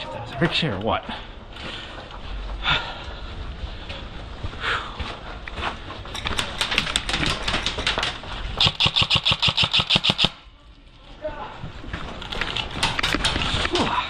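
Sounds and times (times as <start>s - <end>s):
airsoft rifle firing bursts: 8.6s - 10.4s.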